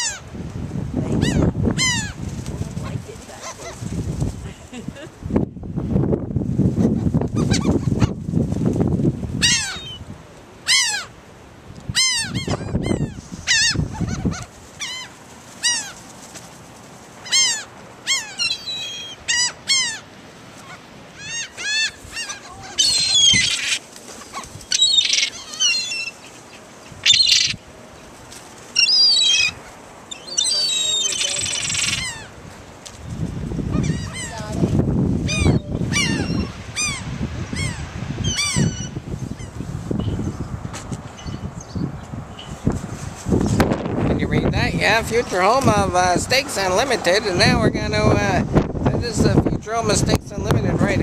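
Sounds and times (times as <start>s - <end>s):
seagulls squawking: 1.2s - 2.2s, 9.4s - 10.0s, 10.7s - 11.1s, 12.0s - 16.0s, 17.2s - 27.6s, 28.8s - 32.4s, 33.7s - 34.6s, 35.2s - 39.6s.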